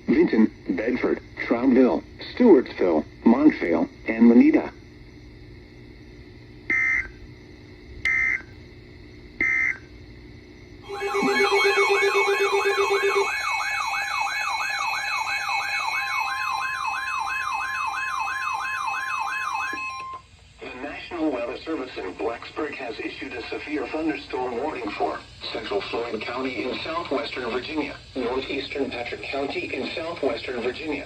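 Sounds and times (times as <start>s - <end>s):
digital data squawks: 10.8s - 17.1s
warbling alert tone: 10.9s - 16.6s.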